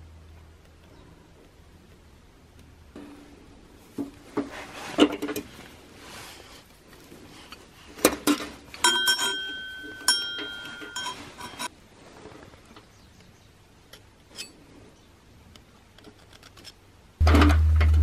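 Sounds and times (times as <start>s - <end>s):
metal objects clinking: 8.3s - 11.7s
short metallic ring: 8.8s - 11.7s.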